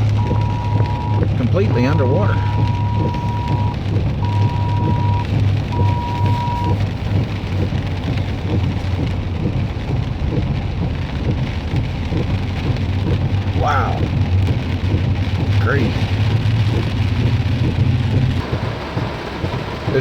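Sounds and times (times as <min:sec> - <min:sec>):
heavy rain on a truck: 0:00.0 - 0:20.0
road rumble: 0:00.0 - 0:20.0
truck engine running low: 0:00.0 - 0:20.0
high electronic beep: 0:00.2 - 0:05.2, 0:05.8 - 0:06.8.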